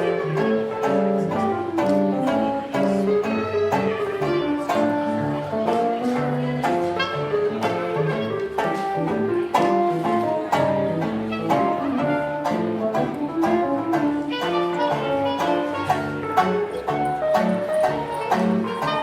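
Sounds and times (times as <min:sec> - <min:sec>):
jazz band playing: 0:00.0 - 0:19.0.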